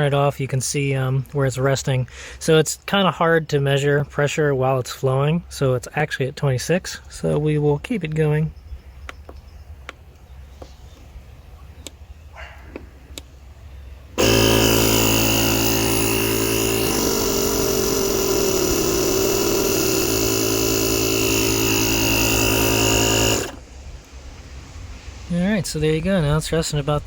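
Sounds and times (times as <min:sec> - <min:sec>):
air compressor humming: 0:14.2 - 0:23.7.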